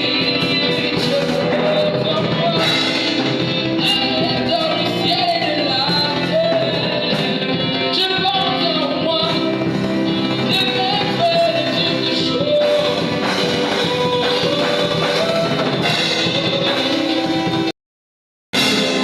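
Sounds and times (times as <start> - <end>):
guitar and band accompaniment: 0.0 - 17.7, 18.6 - 19.0.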